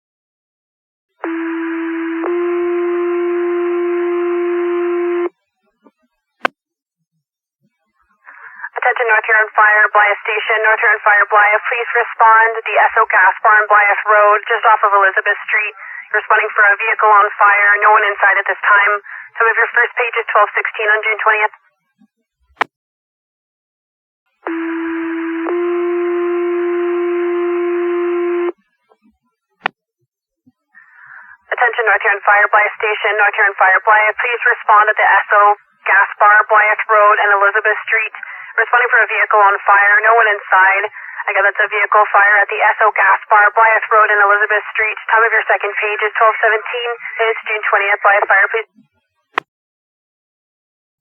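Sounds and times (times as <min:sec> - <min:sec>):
two-tone radio paging tones: 0:24.4 - 0:29.1, 0:30.8 - 0:48.8.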